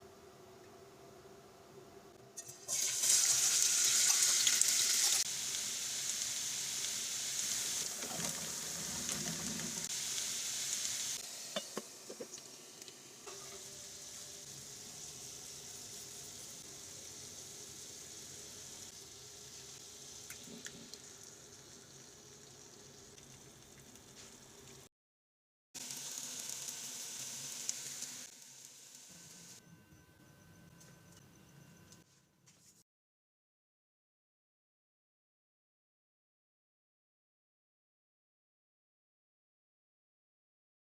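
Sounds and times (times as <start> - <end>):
food sizzling in hot oil: 2.4 - 24.9, 25.8 - 29.6.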